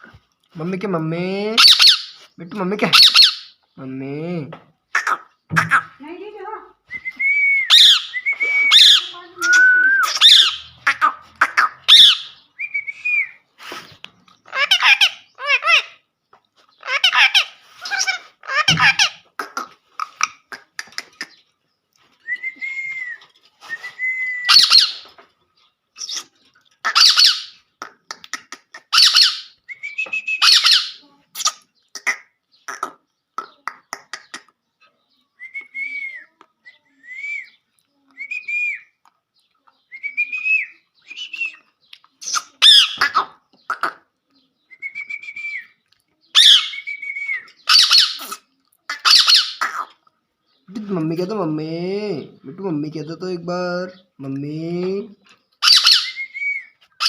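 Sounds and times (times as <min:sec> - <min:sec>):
parrot squawking: 0:01.6 - 0:02.2, 0:02.8 - 0:03.6, 0:04.9 - 0:06.0, 0:07.7 - 0:12.5, 0:14.5 - 0:16.0, 0:16.8 - 0:21.3, 0:24.5 - 0:25.1, 0:26.0 - 0:29.6, 0:30.4 - 0:33.0, 0:42.2 - 0:44.1, 0:46.3 - 0:46.9, 0:47.6 - 0:50.0, 0:55.6 - 0:56.4
parrot whistling: 0:07.1 - 0:10.7, 0:24.0 - 0:25.0, 0:46.4 - 0:48.2, 0:55.6 - 0:56.8.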